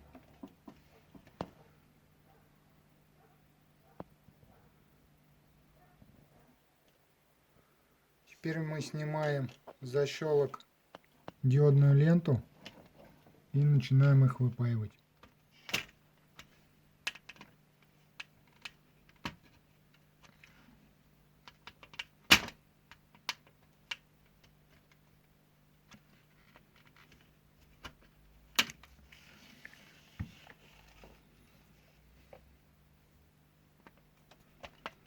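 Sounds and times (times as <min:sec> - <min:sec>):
faint low hum: 0:00.0 - 0:35.0.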